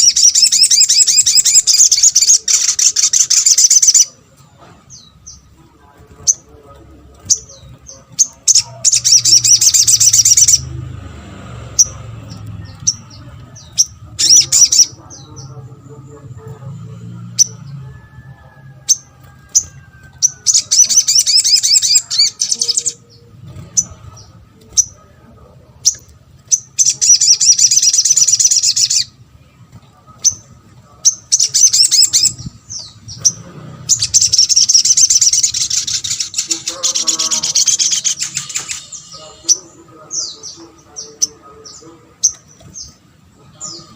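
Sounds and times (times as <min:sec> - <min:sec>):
bird singing high rapid notes: 0:00.0 - 0:43.9.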